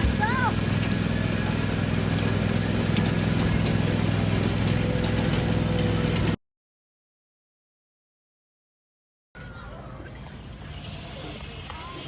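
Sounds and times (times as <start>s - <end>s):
engine running steadily: 0.0s - 6.4s.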